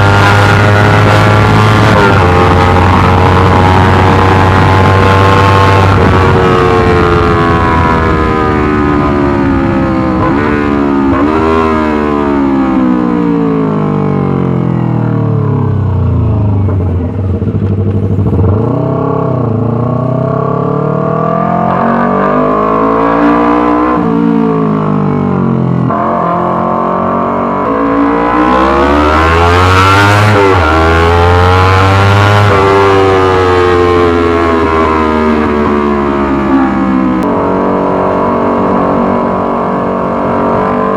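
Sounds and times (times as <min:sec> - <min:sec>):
motorcycle engine revving: 0:00.0 - 0:40.9.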